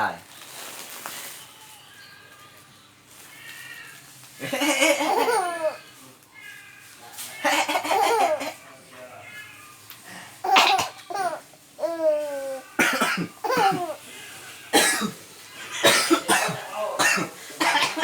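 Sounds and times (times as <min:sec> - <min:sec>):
man coughing: 0:12.8 - 0:14.0, 0:14.7 - 0:15.2, 0:15.8 - 0:18.0.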